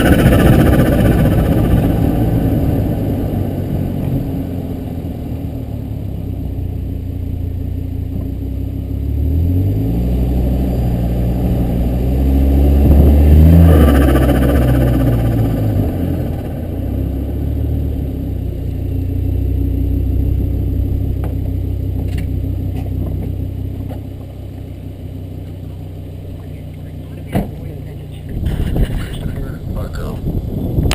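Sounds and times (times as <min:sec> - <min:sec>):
turbo flutter: 0:00.0 - 0:03.0, 0:12.8 - 0:17.4
car engine revving: 0:00.0 - 0:30.9.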